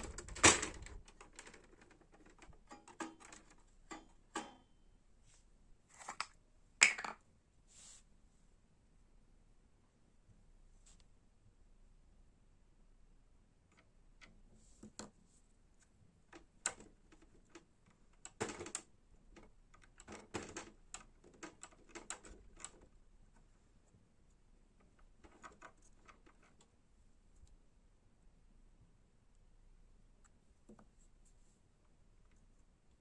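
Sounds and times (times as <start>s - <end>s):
small parts clicking by hand: 16.3s - 23.4s.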